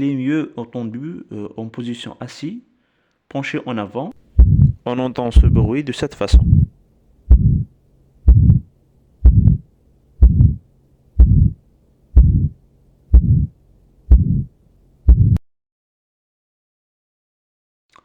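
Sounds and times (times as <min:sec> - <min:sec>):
harsh heart murmur: 0:04.3 - 0:04.8, 0:05.4 - 0:05.7, 0:06.3 - 0:06.7, 0:07.3 - 0:10.6, 0:11.2 - 0:11.6, 0:12.2 - 0:14.5, 0:15.1 - 0:15.4
heartbeat: 0:04.3 - 0:04.8, 0:05.4 - 0:05.7, 0:06.3 - 0:10.6, 0:11.2 - 0:11.6, 0:12.2 - 0:15.4.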